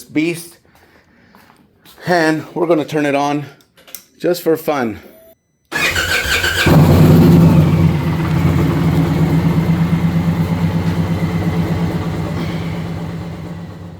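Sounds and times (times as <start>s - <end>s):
motorcycle engine idling: 5.8s - 13.9s.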